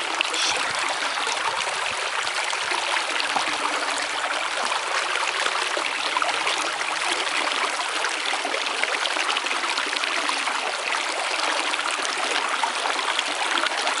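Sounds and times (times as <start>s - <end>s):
stream babbling: 0.0s - 8.2s.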